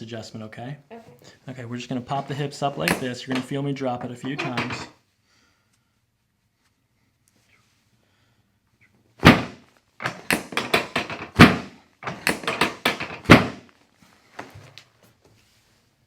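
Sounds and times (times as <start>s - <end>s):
light clicks and knocks: 2.8s - 4.9s, 10.0s - 13.5s
drop table thunk: 4.1s - 4.9s, 9.2s - 13.6s.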